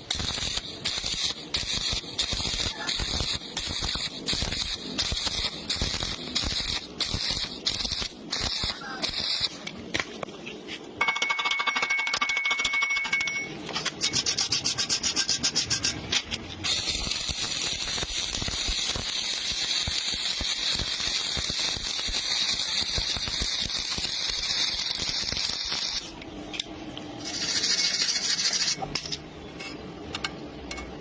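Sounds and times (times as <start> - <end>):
welding arc crackling: 0.0 - 10.4, 14.0 - 26.2, 27.2 - 28.8.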